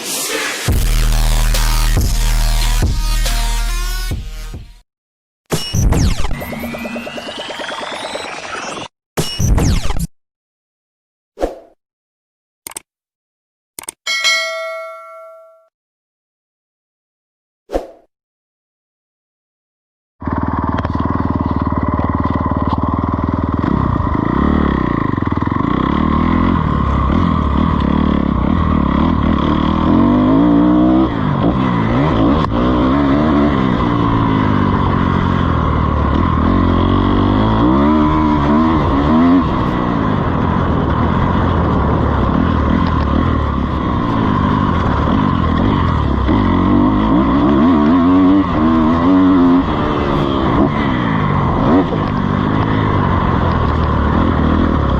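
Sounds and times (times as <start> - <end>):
dirt bike engine revving: 20.2 - 54.9.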